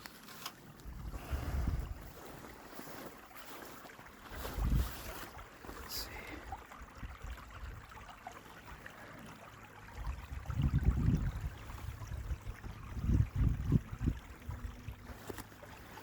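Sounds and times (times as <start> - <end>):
creek running faintly: 0.0 - 16.0
wind buffeting microphone: 0.8 - 2.3, 4.3 - 5.4, 10.0 - 15.2.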